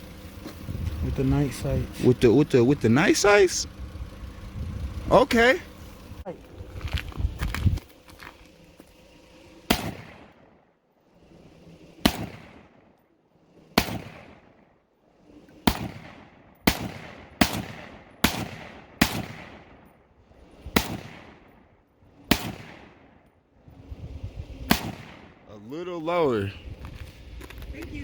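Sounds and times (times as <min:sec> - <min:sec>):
pistol shots with echo: 0:09.7 - 0:10.3, 0:12.1 - 0:12.5, 0:13.8 - 0:14.4, 0:15.7 - 0:19.8, 0:20.8 - 0:21.3, 0:22.3 - 0:22.9, 0:24.7 - 0:25.3.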